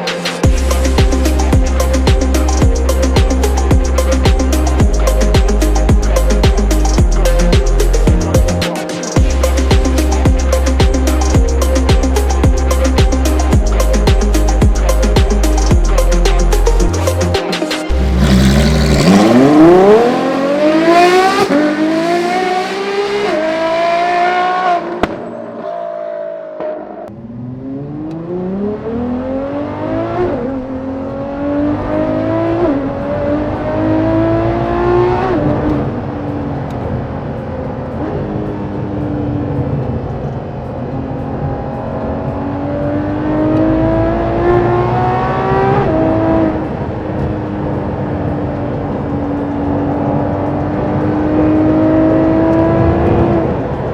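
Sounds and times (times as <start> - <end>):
car engine revving and upshifting: 17.9 - 26.3, 27.0 - 53.9.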